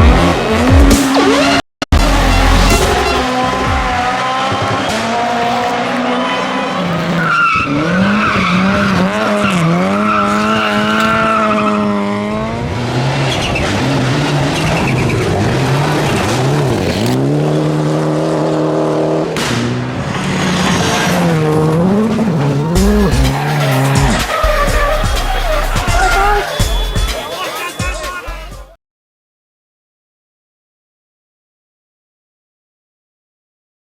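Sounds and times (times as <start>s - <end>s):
race car engine revving: 0.0s - 27.4s
tyre squeal: 1.2s - 12.0s, 22.1s - 28.2s.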